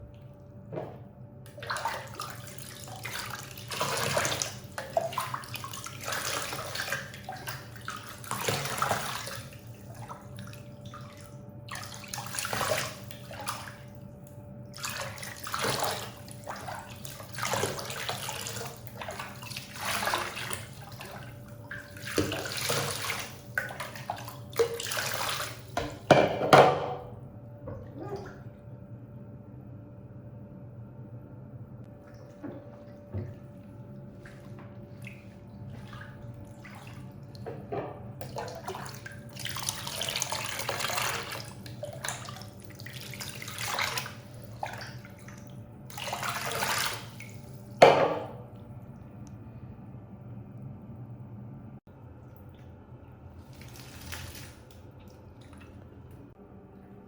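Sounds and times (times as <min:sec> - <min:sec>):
faint steady hum: 0:00.0 - 0:57.0
water splashing and pouring: 0:01.6 - 0:13.9, 0:14.8 - 0:26.0, 0:38.2 - 0:47.8, 0:53.4 - 0:55.8.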